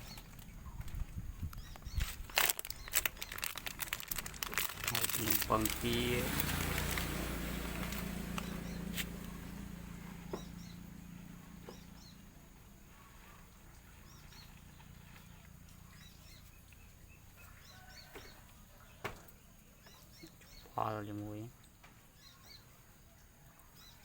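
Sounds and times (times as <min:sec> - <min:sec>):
small birds chirping: 0:00.0 - 0:24.0
low hum: 0:02.6 - 0:15.9.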